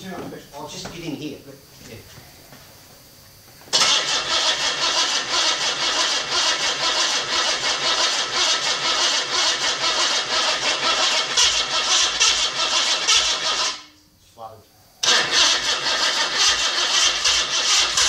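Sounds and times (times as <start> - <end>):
car engine starting and running: 3.8 - 13.8, 15.0 - 18.0.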